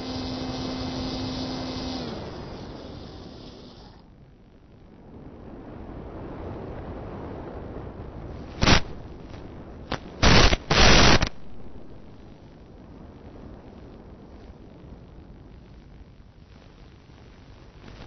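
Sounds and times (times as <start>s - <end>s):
harsh noise bursts: 0.0s - 4.0s, 8.4s - 11.4s
steady rushing noise: 0.0s - 18.0s.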